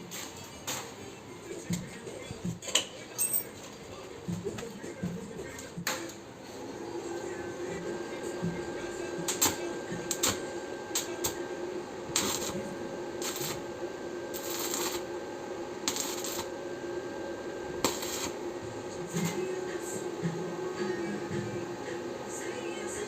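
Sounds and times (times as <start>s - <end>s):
steady hum: 3.9s - 23.0s
welding arc crackling: 9.2s - 11.4s, 12.0s - 15.2s, 15.8s - 16.7s, 17.6s - 19.4s.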